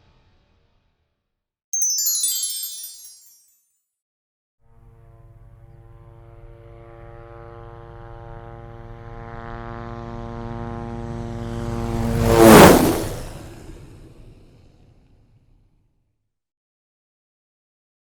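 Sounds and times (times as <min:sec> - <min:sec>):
propeller aircraft flying by: 0:07.0 - 0:14.0.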